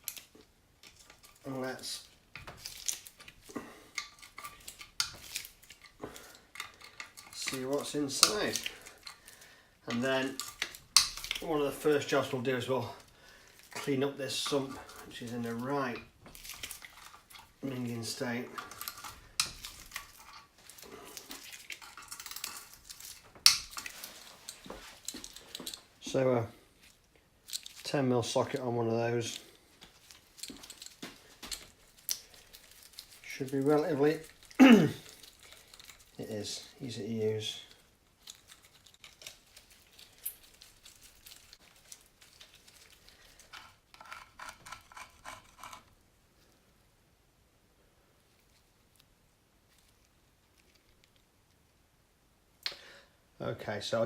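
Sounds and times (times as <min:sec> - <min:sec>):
metal hand tools clinking: 0:02.4 - 0:13.0, 0:13.6 - 0:25.9, 0:30.1 - 0:41.6.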